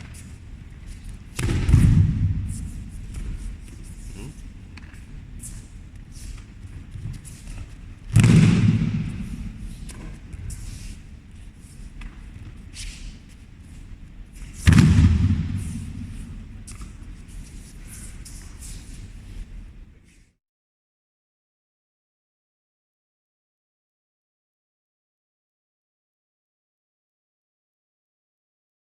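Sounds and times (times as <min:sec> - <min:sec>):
low room noise rumble: 0:00.0 - 0:20.4.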